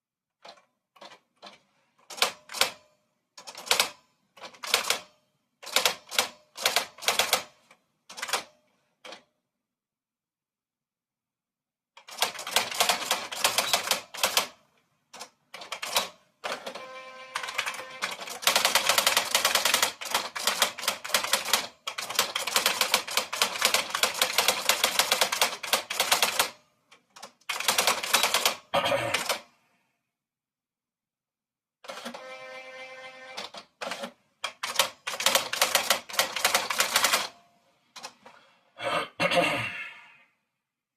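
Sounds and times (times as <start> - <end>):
manual typewriter typing: 0.4 - 7.5, 8.1 - 9.3, 12.0 - 14.6, 15.2 - 29.5, 33.4 - 37.3.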